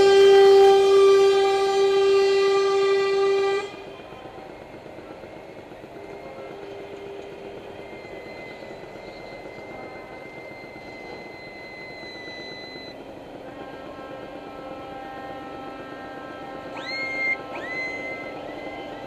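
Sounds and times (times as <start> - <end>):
truck air horn: 0.0 - 4.0, 13.4 - 19.0.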